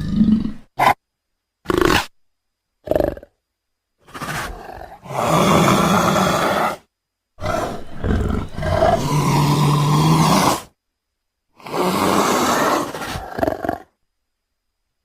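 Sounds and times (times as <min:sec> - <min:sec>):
leopard roaring: 0:00.0 - 0:00.8, 0:04.0 - 0:06.8, 0:07.4 - 0:10.7, 0:11.6 - 0:13.9.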